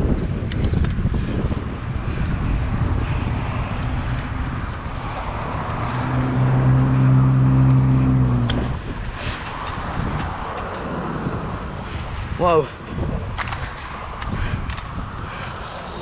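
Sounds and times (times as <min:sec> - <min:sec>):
street traffic: 0:00.0 - 0:16.0
wind rumbling on microphone: 0:00.0 - 0:16.0
steady low drone: 0:01.1 - 0:08.9.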